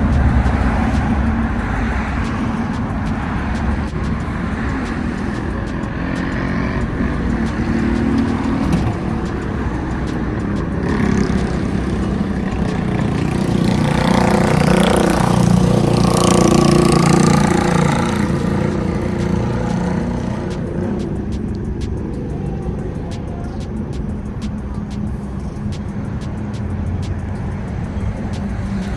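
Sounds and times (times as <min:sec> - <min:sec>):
street traffic: 0:00.0 - 0:28.9
vehicle passing close by: 0:00.0 - 0:28.9.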